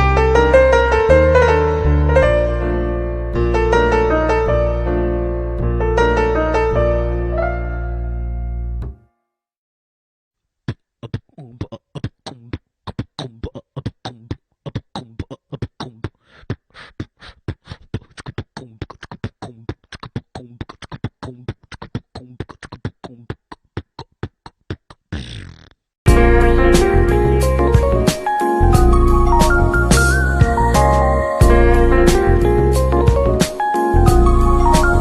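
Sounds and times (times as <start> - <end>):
beatbox rhythm: 10.6 - 35.0
ringtone music: 26.1 - 35.0.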